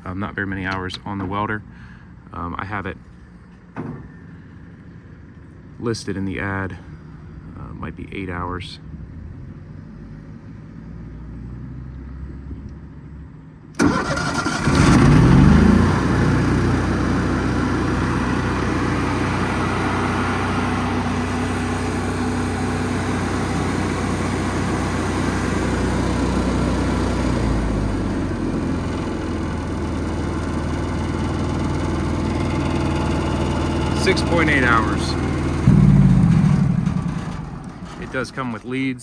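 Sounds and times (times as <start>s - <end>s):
welder engine starting and running: 13.8s - 38.8s.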